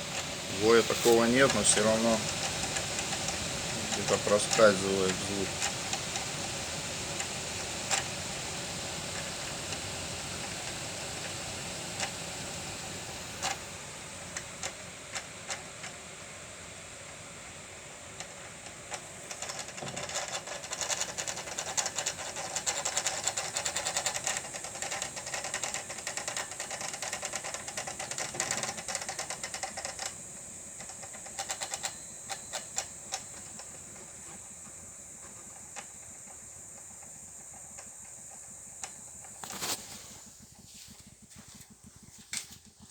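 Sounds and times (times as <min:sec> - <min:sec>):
wheel spinning with hiss and whine: 0:00.0 - 0:42.9
irregular ticks: 0:00.1 - 0:06.4, 0:30.8 - 0:34.1.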